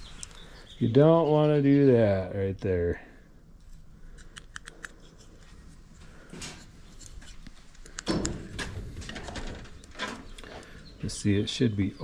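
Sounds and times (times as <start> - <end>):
light handling clicks: 4.1 - 5.0.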